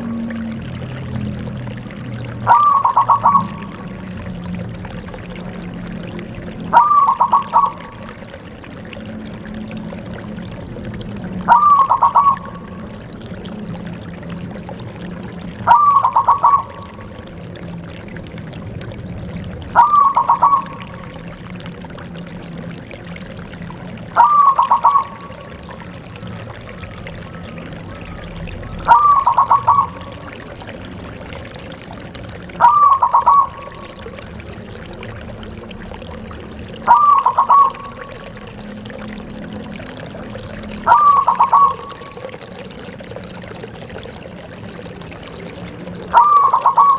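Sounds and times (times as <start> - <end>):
dove cooing: 2.2 - 4.2, 5.0 - 9.8, 11.4 - 13.5, 15.5 - 17.2, 19.7 - 21.2, 23.9 - 34.4, 36.7 - 38.6, 40.2 - 42.6, 44.4 - 46.9.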